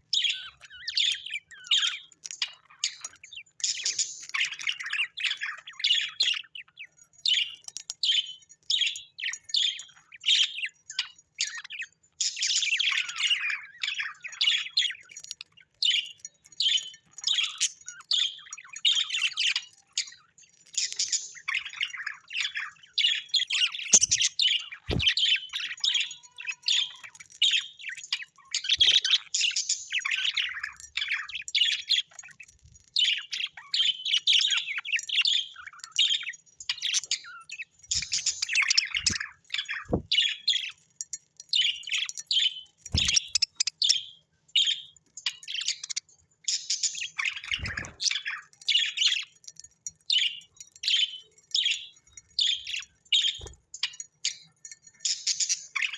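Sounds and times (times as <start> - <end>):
birds chirping and tweeting: 0.0 - 55.9.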